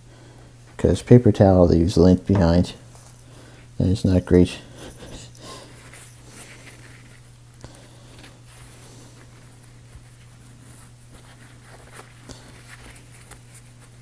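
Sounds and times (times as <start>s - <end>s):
paper towel rustling: 5.6s - 14.0s.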